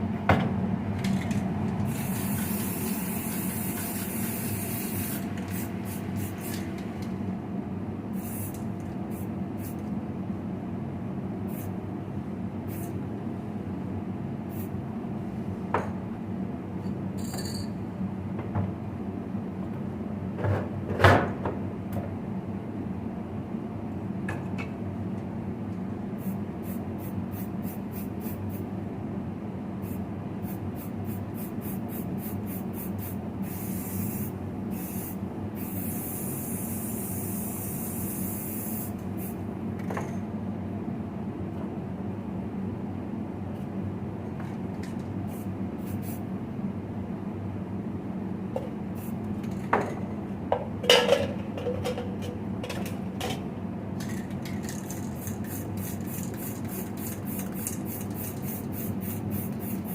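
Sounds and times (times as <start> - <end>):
workshop hum: 0.0 - 59.9
spray hissing: 1.9 - 6.5, 8.2 - 9.7, 31.1 - 39.3.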